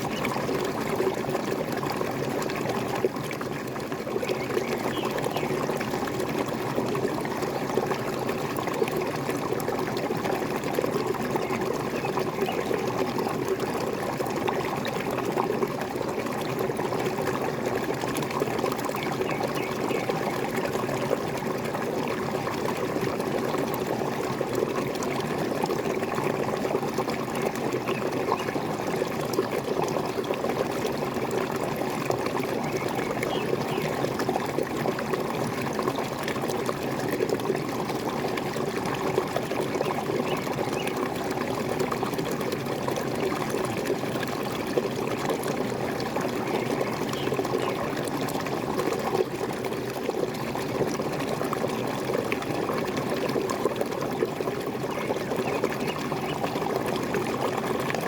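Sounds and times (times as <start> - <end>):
small waterfall splashing: 0.0 - 58.0.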